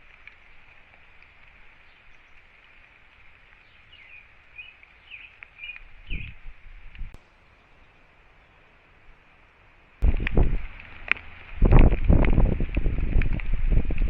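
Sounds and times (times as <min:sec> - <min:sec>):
bird chirping: 0:03.6 - 0:06.5.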